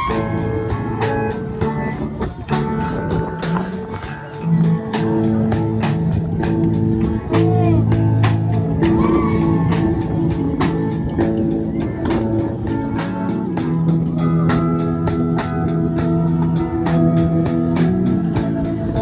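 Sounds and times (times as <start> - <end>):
instrumental rock music: 0.0 - 19.0.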